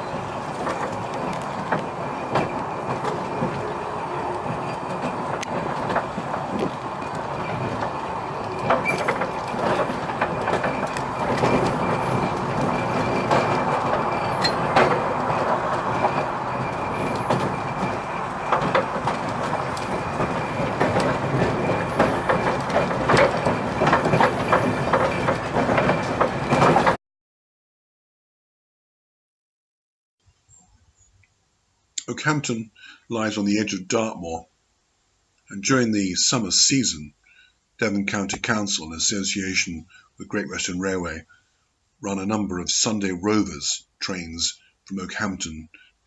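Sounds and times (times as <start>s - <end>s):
train rumble: 0.0s - 27.0s, 35.5s - 37.2s, 37.8s - 41.3s, 42.0s - 45.8s
train wheels clattering on rails: 0.0s - 27.0s.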